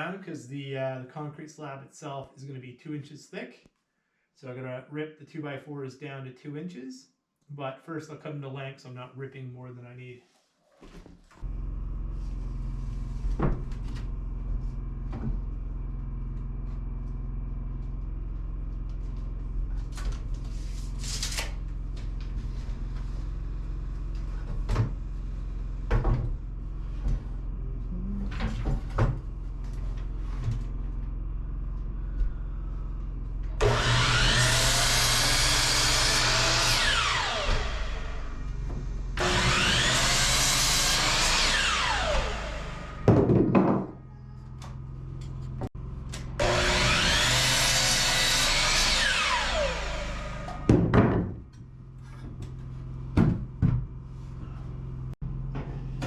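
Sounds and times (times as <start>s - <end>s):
steady low hum: 23.5s - 33.6s
power saw cutting wood: 33.5s - 43.1s, 46.2s - 50.7s.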